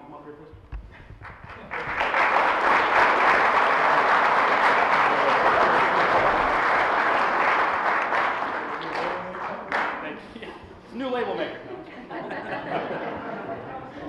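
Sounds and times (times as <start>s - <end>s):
audience applauding: 1.2s - 10.2s.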